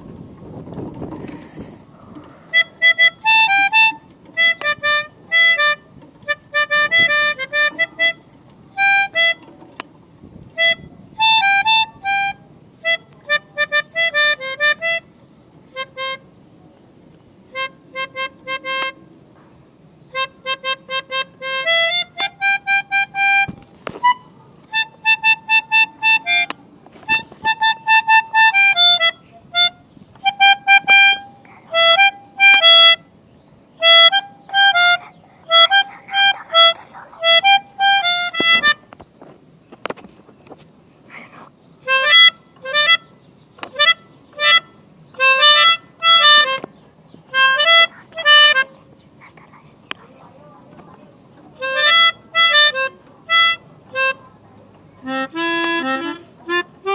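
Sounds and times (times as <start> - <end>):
multi-tone horn playing a tune: 17.6 - 19.0.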